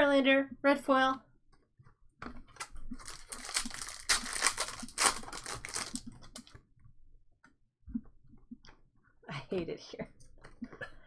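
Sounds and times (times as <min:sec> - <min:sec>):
plastic wrapper crinkling: 0:02.6 - 0:06.6.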